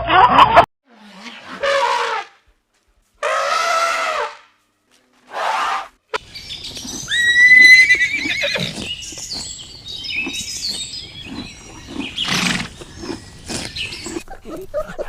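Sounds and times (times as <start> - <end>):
horse whinnying: 6.8 - 8.9, 11.3 - 14.1.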